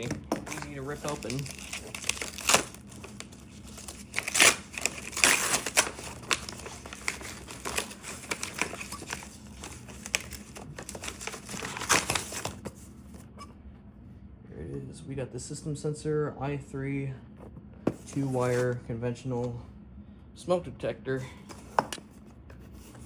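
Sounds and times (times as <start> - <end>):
package wrapping ripping and rustling: 0.0 - 12.8.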